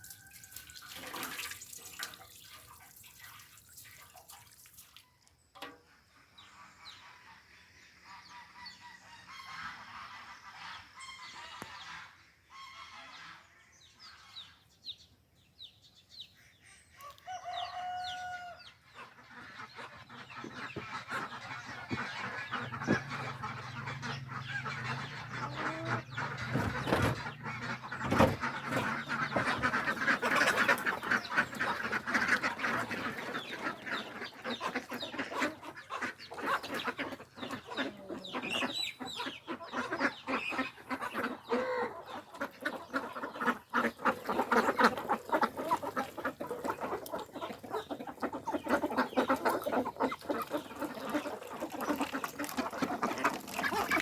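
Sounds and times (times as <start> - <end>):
chickens clucking: 17.0 - 54.0
ducks quacking: 17.4 - 54.0.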